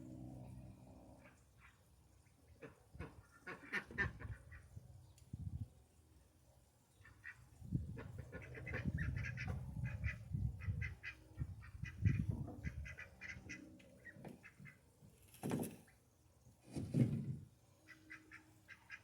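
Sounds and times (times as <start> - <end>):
ducks quacking: 2.5 - 4.7, 7.0 - 14.8, 17.9 - 19.0.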